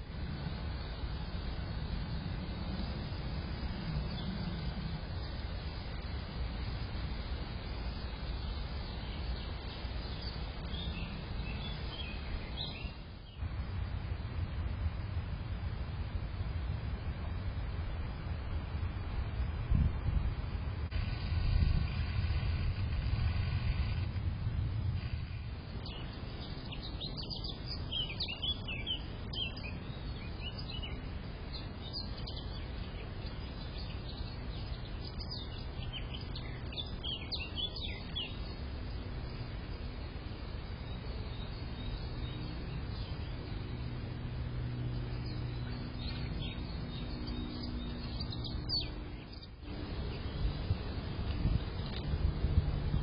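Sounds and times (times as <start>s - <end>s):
songbirds chirping: 0.0s - 14.6s, 25.3s - 53.0s
low background rumble: 0.0s - 53.0s.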